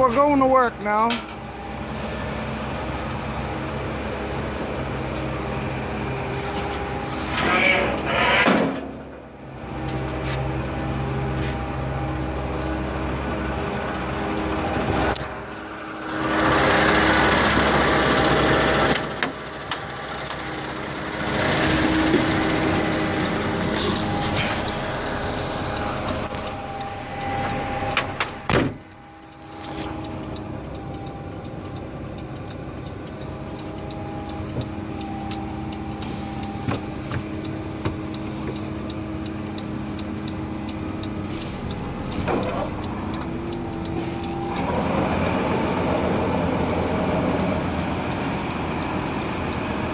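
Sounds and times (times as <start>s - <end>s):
heavy diesel engine running: 0.0s - 49.9s
rushing noise: 21.0s - 30.3s.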